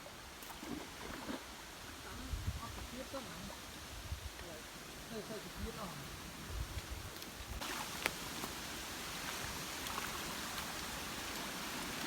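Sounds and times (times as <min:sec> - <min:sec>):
flowing river water: 0:00.0 - 0:03.9, 0:07.2 - 0:12.0.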